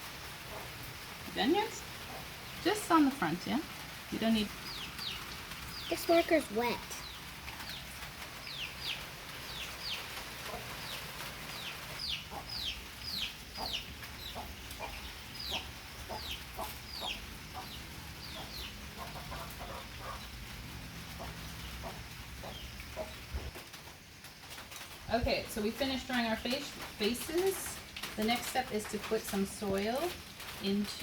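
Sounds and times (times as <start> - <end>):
chickens clucking: 0.5 - 20.4, 21.1 - 23.5.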